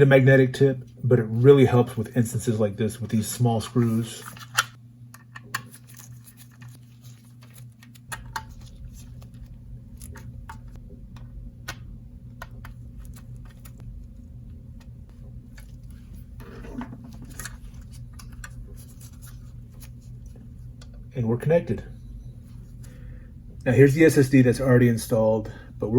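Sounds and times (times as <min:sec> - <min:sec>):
steady low hum: 0:00.0 - 0:25.9.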